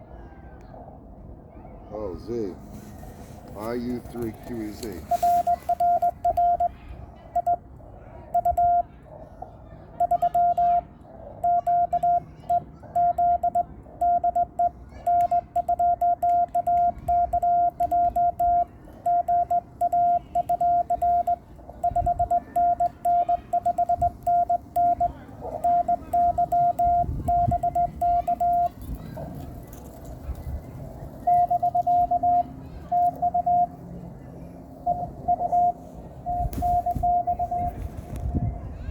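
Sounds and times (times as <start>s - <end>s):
morse code beeps: 4.0s - 7.6s, 8.4s - 8.9s, 10.0s - 28.8s, 31.2s - 33.8s, 34.8s - 38.0s.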